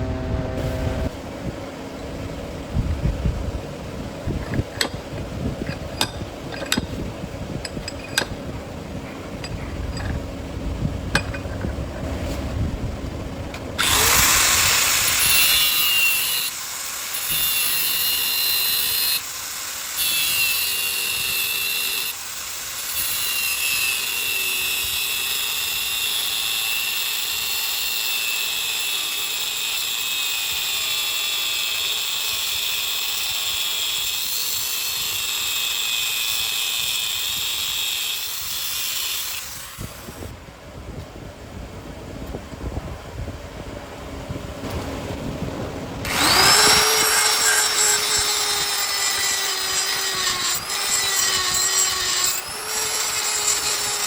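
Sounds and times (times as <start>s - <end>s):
power tool whining: 0.0s - 1.2s, 13.8s - 40.3s, 46.0s - 54.0s.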